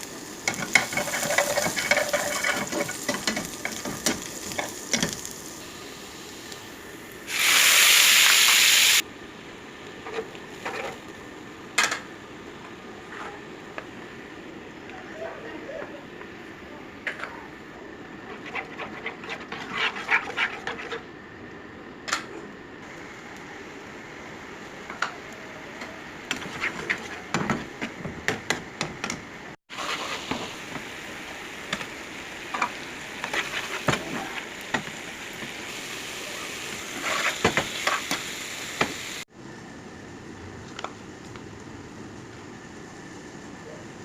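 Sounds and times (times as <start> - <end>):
chicken sizzling in a pan: 0.0 - 9.0, 29.7 - 39.3
spatula scraping a pan: 0.5 - 5.1, 18.2 - 21.2, 26.3 - 27.5, 29.7 - 30.4, 33.2 - 34.4, 36.8 - 38.2.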